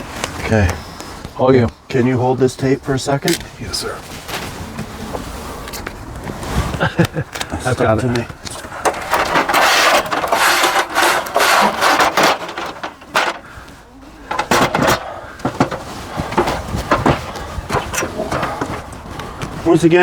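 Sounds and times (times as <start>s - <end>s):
tape rustling and rubbing: 7.6s - 19.8s
light knocks and rubs: 8.2s - 19.7s
tape peeled from backing: 8.4s - 13.5s.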